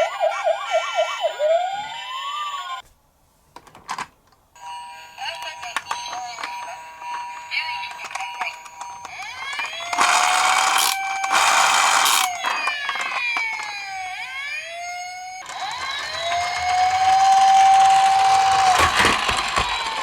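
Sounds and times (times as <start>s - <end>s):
toy electronic siren wailing: 0.0s - 2.8s, 9.0s - 20.0s.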